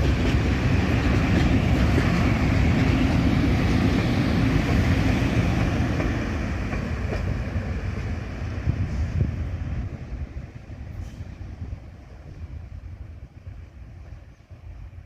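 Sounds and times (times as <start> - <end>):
train rumbling past: 0.0 - 15.0.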